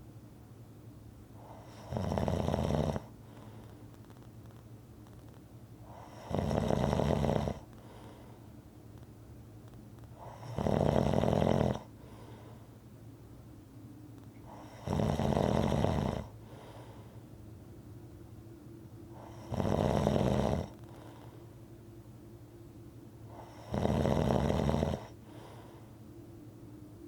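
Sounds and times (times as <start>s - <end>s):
quiet breathing: 1.3s - 4.3s, 5.8s - 8.7s, 10.0s - 13.0s, 14.2s - 17.5s, 19.0s - 22.0s, 23.1s - 26.6s
loud snoring: 1.5s - 3.1s, 5.9s - 7.7s, 10.2s - 11.9s, 14.5s - 16.4s, 19.2s - 20.8s, 23.3s - 25.2s.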